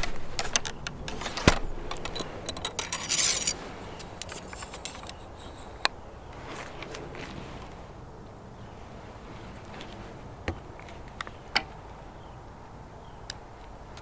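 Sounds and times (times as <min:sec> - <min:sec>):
rasping scrape: 0:00.0 - 0:05.7
gear handling clicks and knocks: 0:00.0 - 0:06.0.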